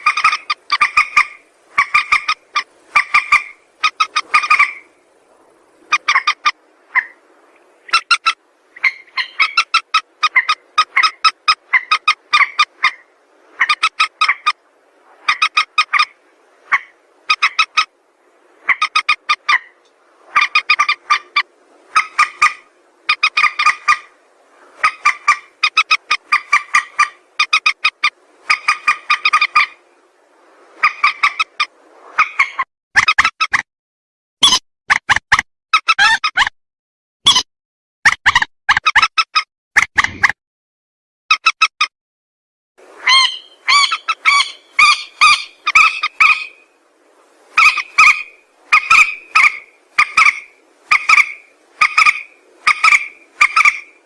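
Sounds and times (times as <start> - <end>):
rail calling nasal notes: 47.5 - 53.9.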